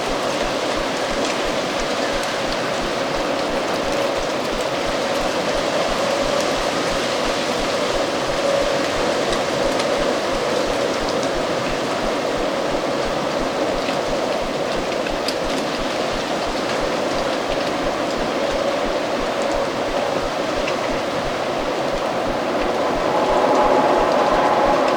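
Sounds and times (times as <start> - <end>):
wind blowing: 17.8 - 24.9.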